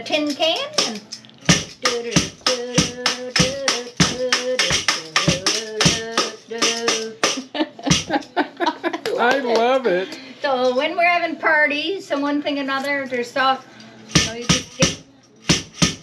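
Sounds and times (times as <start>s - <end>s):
person humming a wordless tune: 0.8s - 8.1s.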